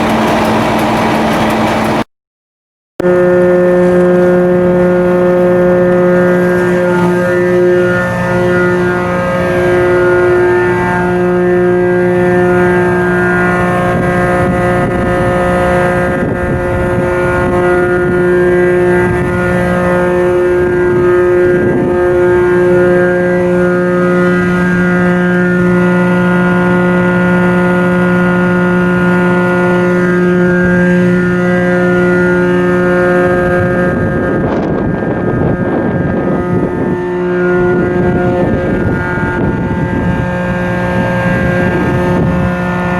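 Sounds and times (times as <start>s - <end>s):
rushing noise: 0.0s - 2.0s
ship diesel engine humming: 0.0s - 2.1s, 3.0s - 20.5s, 24.2s - 34.0s, 37.0s - 42.9s.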